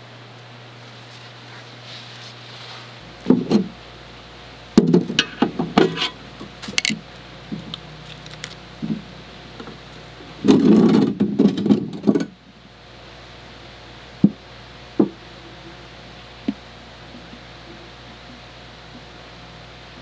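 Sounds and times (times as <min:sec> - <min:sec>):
steady low hum: 0:00.0 - 0:20.0
sharp knocks and clatters: 0:04.8 - 0:07.7.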